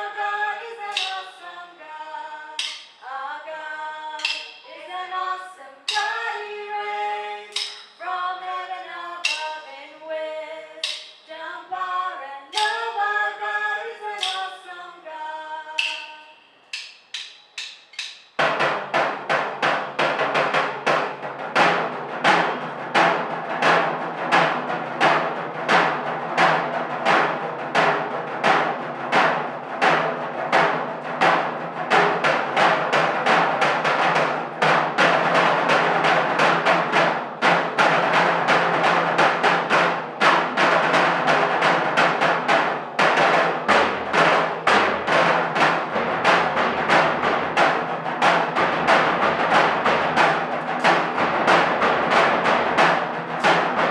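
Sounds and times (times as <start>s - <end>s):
drum ensemble playing: 0.9s - 1.2s, 2.6s - 3.0s, 4.2s - 4.7s, 7.5s - 8.0s, 9.2s - 9.6s, 10.8s - 11.2s, 17.0s - 53.9s
deeper drum: 18.4s - 53.9s.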